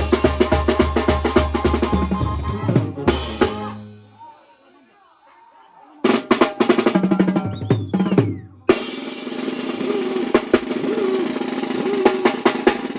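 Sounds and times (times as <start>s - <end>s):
snare and bass drum strikes: 0.0s - 3.8s.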